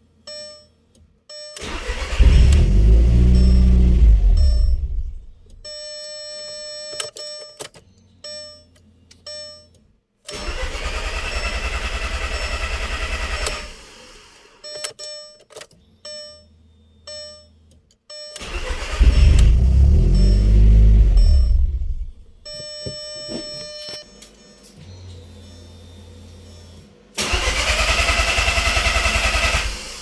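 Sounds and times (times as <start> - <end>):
car starter cranking engine: 1.6 - 5.8, 10.3 - 14.6, 18.4 - 22.6, 26.6 - 30.0
electronic warning chimes: 1.6 - 6.5, 18.1 - 26.8.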